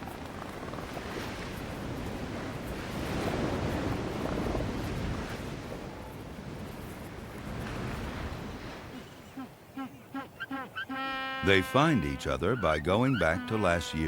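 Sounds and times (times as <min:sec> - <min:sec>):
ocean surf washing on beach: 0:00.0 - 0:09.7.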